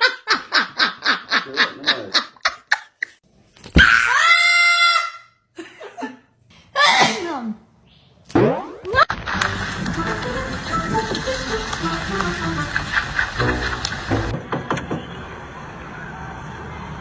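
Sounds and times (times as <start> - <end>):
person laughing: 0.0 - 3.2
high-pitched cry: 3.8 - 5.4.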